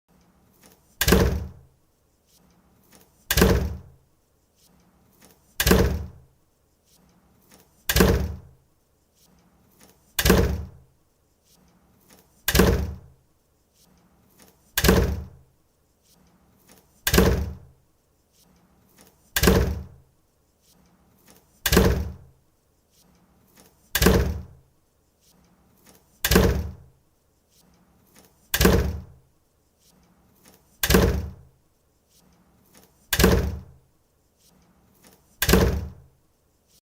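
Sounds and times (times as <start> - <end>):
door slamming shut: 1.0 - 1.6, 3.3 - 3.9, 5.6 - 6.2, 7.9 - 8.5, 10.2 - 10.8, 12.5 - 13.1, 14.8 - 15.4, 17.1 - 17.7, 19.4 - 19.9, 21.7 - 22.2, 24.0 - 24.5, 26.2 - 26.8, 28.5 - 29.1, 30.8 - 31.4, 33.1 - 33.7, 35.4 - 36.0.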